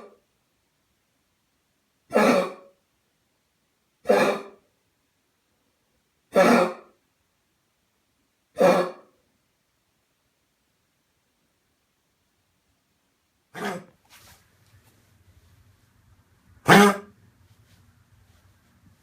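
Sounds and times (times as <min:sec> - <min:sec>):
dog coughing: 0:02.1 - 0:02.8, 0:04.0 - 0:04.6, 0:06.3 - 0:07.0, 0:08.6 - 0:09.1, 0:13.6 - 0:13.9, 0:16.7 - 0:17.1.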